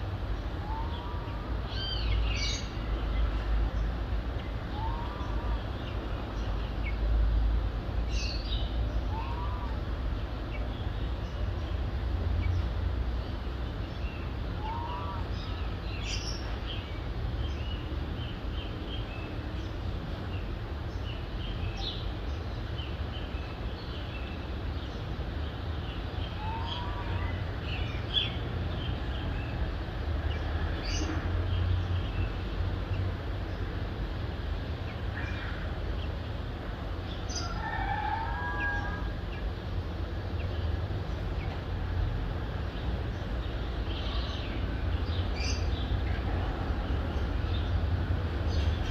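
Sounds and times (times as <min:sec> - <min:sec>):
distant city traffic rumble: 0:00.0 - 0:48.9
bird calls: 0:04.7 - 0:07.0, 0:08.2 - 0:09.8, 0:14.6 - 0:16.8.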